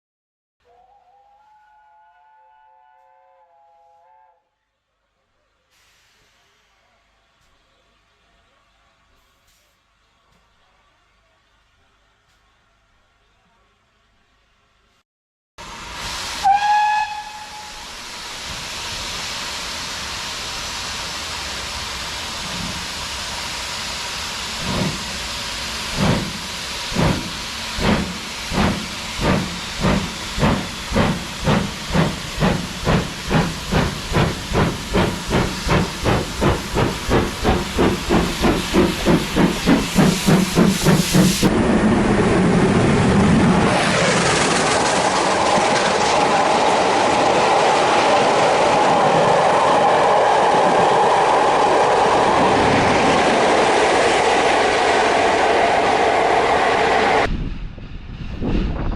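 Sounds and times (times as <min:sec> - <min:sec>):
steam whistle blast: 0:00.7 - 0:04.5, 0:16.1 - 0:18.1
steam hissing: 0:15.6 - 0:41.7, 0:44.4 - 0:57.3
steady train noise: 0:15.6 - 0:58.9
locomotive exhaust chuffs: 0:16.8 - 0:41.7.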